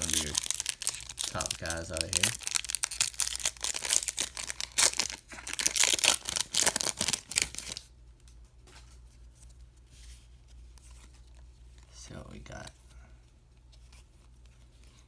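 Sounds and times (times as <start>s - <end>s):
wrapper being torn and crumpled: 0.0s - 7.8s.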